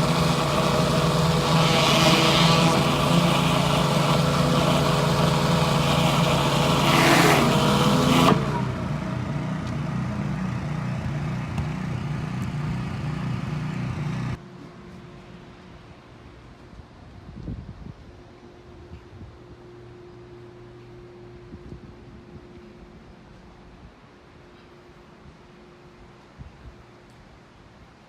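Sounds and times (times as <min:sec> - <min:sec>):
high-pressure water spraying: 0:00.0 - 0:09.2
pressure washer engine running: 0:00.0 - 0:14.4.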